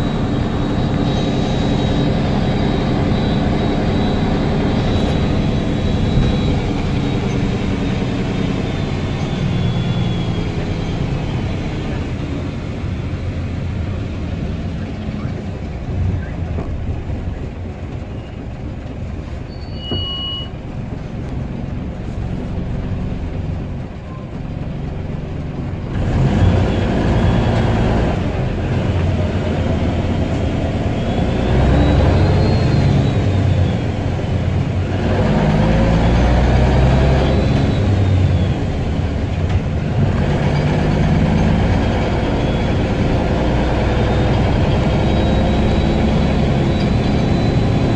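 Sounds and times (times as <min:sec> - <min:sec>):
turbo whistle: 0:00.0 - 0:11.0, 0:19.5 - 0:20.6, 0:42.0 - 0:47.9
bus engine revving: 0:00.0 - 0:47.9.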